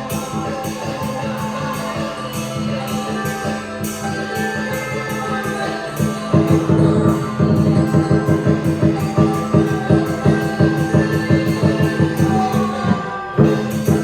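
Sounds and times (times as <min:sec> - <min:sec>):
drum and cymbals rhythm: 0:00.0 - 0:14.0.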